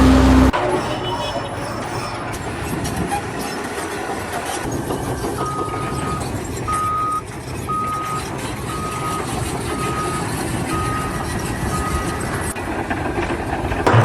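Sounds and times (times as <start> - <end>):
engine and site rumble: 0.0 - 14.0
vehicle reversing alarm beeping: 4.8 - 12.6.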